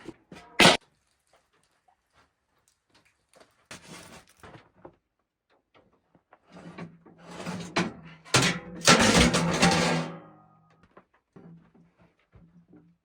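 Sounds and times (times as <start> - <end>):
knocks and clattering: 8.4 - 10.4.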